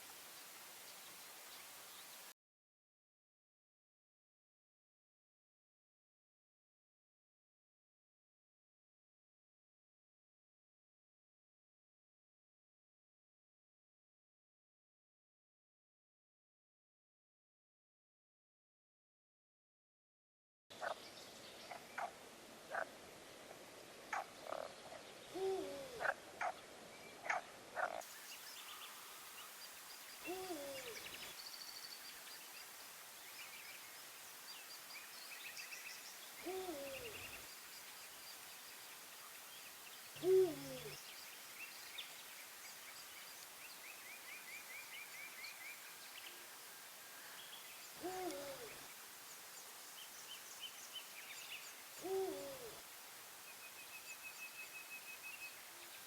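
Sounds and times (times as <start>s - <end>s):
owl hooting: 25.3s - 26.2s, 30.2s - 31.2s, 36.4s - 37.4s, 40.2s - 41.0s, 48.0s - 48.8s, 52.0s - 52.8s
small birds singing: 26.5s - 56.0s.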